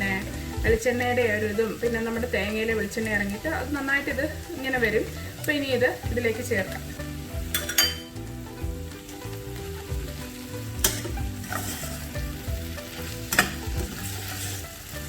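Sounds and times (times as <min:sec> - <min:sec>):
food sizzling: 0:00.0 - 0:15.0
spoon stirring in a pan: 0:06.6 - 0:08.3, 0:09.0 - 0:14.9
spoon clinking against pan: 0:07.5 - 0:08.2, 0:10.8 - 0:11.8.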